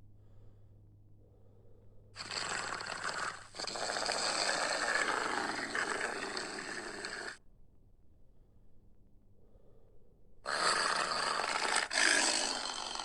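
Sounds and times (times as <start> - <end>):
rough animal roar: 2.2 - 7.4, 10.5 - 13.0.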